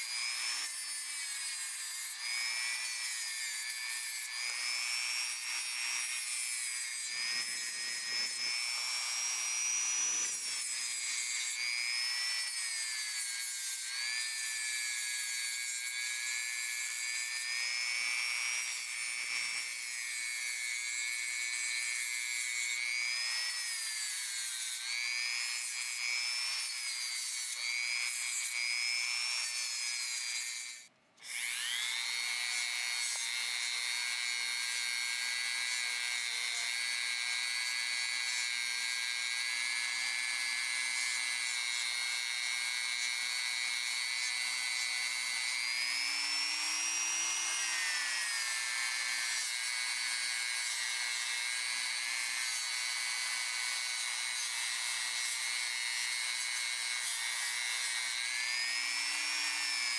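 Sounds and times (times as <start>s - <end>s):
rotary tool whining: 0.0s - 15.6s.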